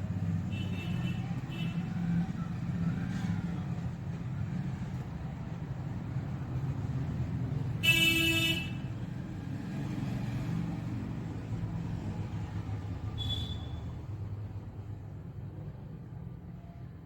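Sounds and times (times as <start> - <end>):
low traffic rumble: 0.0 - 17.0
vehicle horn honking: 7.8 - 8.9, 13.2 - 13.8.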